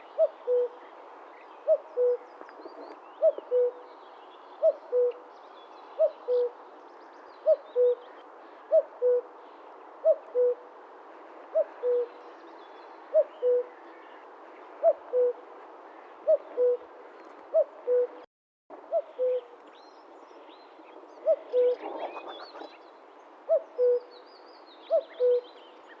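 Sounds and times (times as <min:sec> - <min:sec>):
cuckoo calling: 0:24.9 - 0:25.5.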